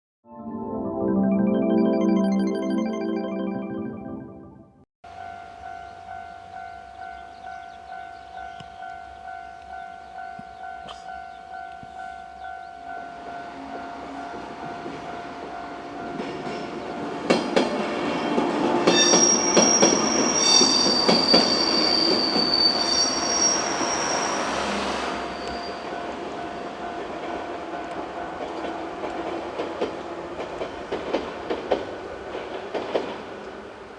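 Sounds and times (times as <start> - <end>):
level crossing bell ringing: 0.5 - 4.5
electric train passing: 5.1 - 10.8, 11.5 - 33.9
wheels clacking over rail joints: 16.1 - 20.0, 26.0 - 33.6
high wheel squeal: 18.9 - 26.0.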